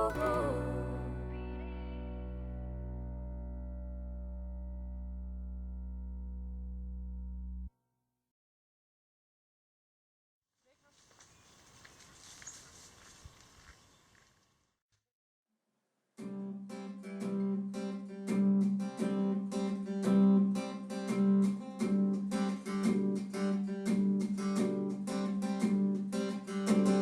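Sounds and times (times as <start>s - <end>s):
acoustic guitar strumming: 0.0s - 4.3s, 16.2s - 27.0s.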